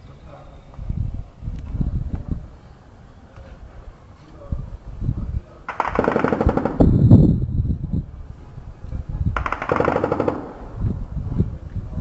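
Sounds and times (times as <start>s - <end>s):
automatic gunfire: 5.7s - 6.9s, 9.4s - 10.6s.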